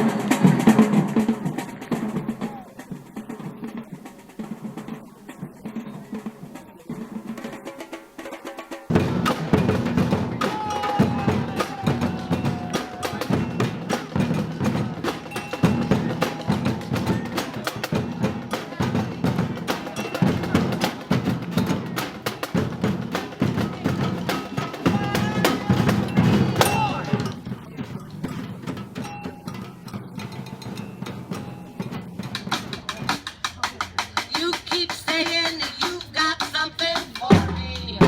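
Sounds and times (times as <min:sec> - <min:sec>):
drums pounding: 0:00.0 - 0:38.0
ringing percussion tones: 0:00.0 - 0:38.0
sharp percussion clicks: 0:08.4 - 0:38.0.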